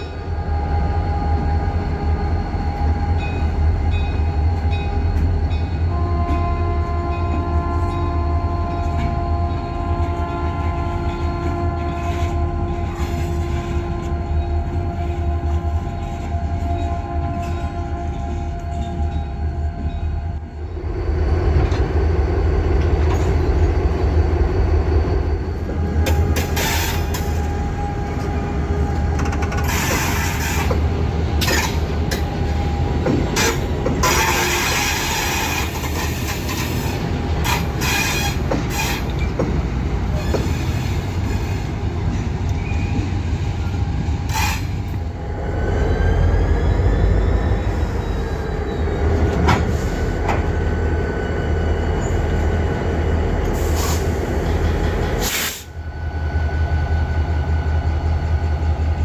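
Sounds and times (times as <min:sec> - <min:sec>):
freight train rumbling: 0:00.0 - 0:59.0
train wheels clacking: 0:28.2 - 0:43.2, 0:53.4 - 0:55.7.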